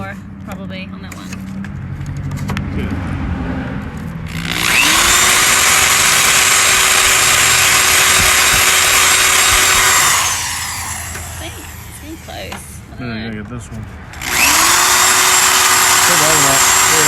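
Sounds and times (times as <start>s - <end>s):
electric drill whining: 4.3s - 12.8s, 14.2s - 17.0s.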